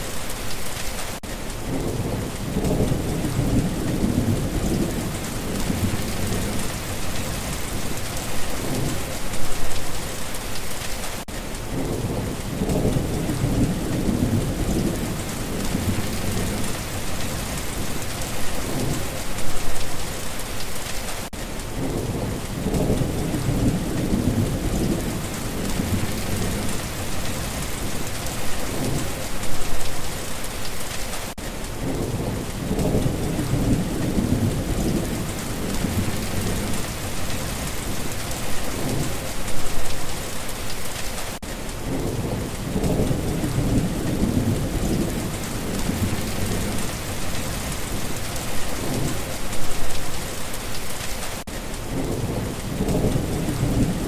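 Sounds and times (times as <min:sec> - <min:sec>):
steady rain falling: 0:00.0 - 0:54.0
low rolling thunder: 0:01.6 - 0:09.8, 0:11.7 - 0:19.8, 0:21.7 - 0:29.7, 0:31.8 - 0:40.0, 0:41.8 - 0:50.0, 0:51.9 - 0:54.0.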